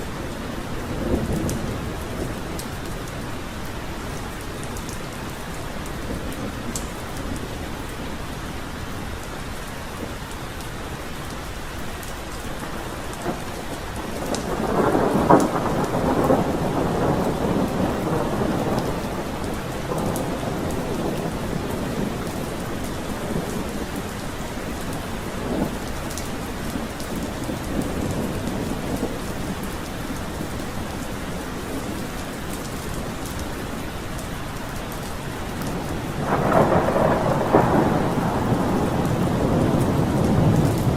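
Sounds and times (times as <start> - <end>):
steady rain: 0.0 - 40.9
thunder rolling: 12.6 - 24.2, 35.7 - 40.9.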